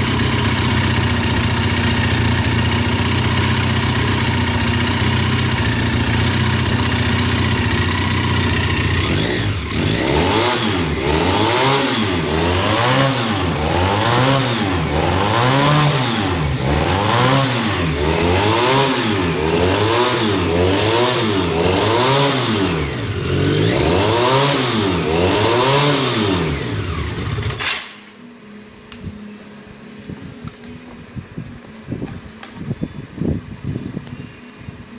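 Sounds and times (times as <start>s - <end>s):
motorcycle engine revving: 0.0s - 27.9s.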